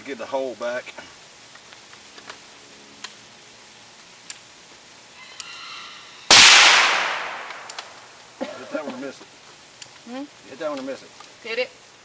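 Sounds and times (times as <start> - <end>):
faint ticks: 4.0 - 4.5, 9.8 - 10.1
rifle shot: 6.3 - 7.9.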